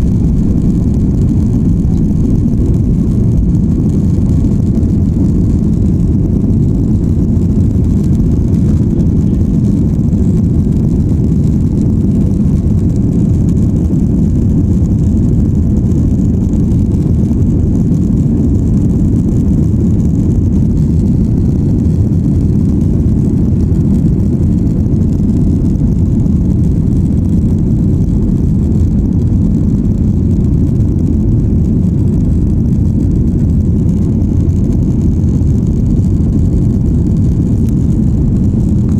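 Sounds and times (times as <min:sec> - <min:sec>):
jet engines during takeoff: 0:00.0 - 0:38.9.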